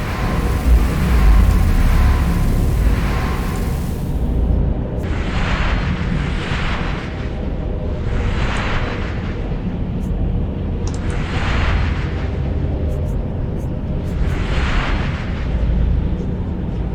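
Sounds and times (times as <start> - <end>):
hissing whooshes: 0.0 - 4.6
deep steady rumble: 0.0 - 6.4.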